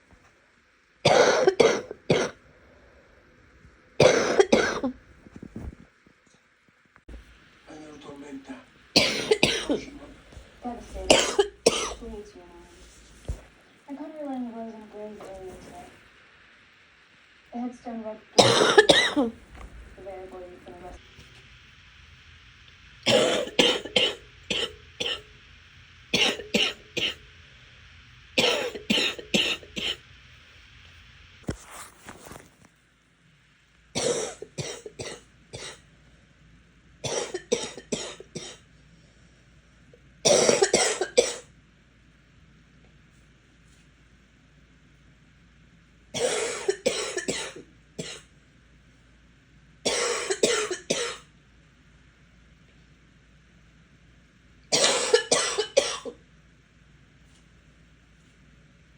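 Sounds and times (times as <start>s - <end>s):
person coughing harshly: 1.0s - 2.4s, 4.0s - 5.0s, 9.0s - 10.1s, 10.9s - 12.1s, 18.4s - 19.7s, 23.1s - 25.2s, 26.2s - 27.2s, 28.4s - 30.0s, 34.0s - 35.8s, 37.0s - 38.6s, 40.2s - 41.5s, 46.2s - 48.2s, 49.9s - 51.3s, 54.7s - 56.2s.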